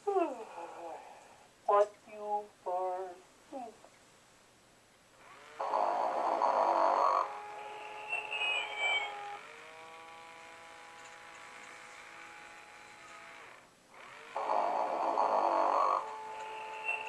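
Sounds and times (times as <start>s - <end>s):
toy snore through small speaker: 0.3s - 1.5s, 5.5s - 8.4s, 13.3s - 17.0s
electronic tones and chirp: 6.6s - 9.4s, 15.5s - 17.0s.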